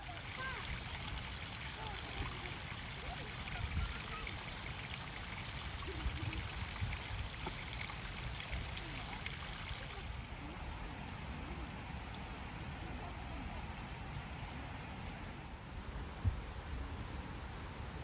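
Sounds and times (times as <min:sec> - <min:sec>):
faint distant voices: 0:00.0 - 0:12.0.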